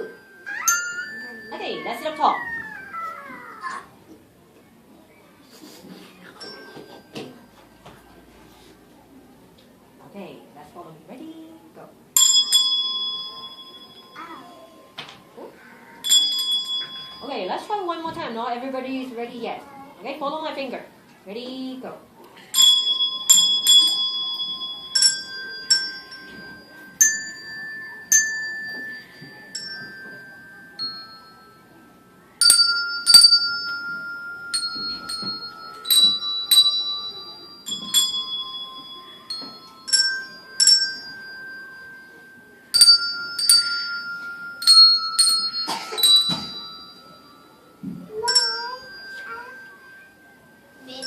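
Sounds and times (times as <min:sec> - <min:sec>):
handbells ringing a melody: 0:00.0 - 0:02.8, 0:06.3 - 0:07.7, 0:12.2 - 0:15.0, 0:15.9 - 0:17.6, 0:22.5 - 0:51.0.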